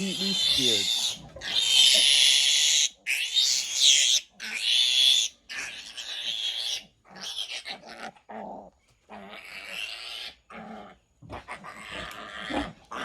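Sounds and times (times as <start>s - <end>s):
piglet squealing: 0.0s - 8.1s.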